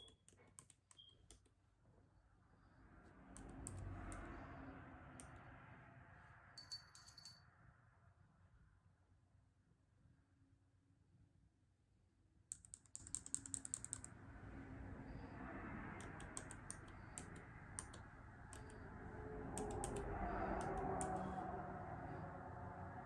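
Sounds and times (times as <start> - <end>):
laptop keyboard typing: 0.0 - 1.6, 3.4 - 4.3, 12.5 - 14.3, 15.8 - 21.6.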